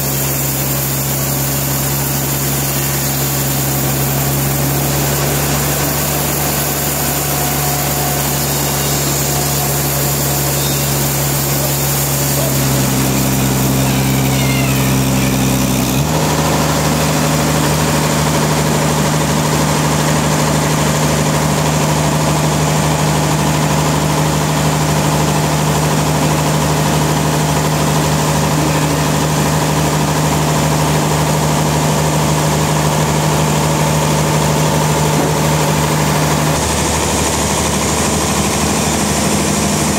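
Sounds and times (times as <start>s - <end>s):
sawmill machinery humming: 0.0s - 39.9s.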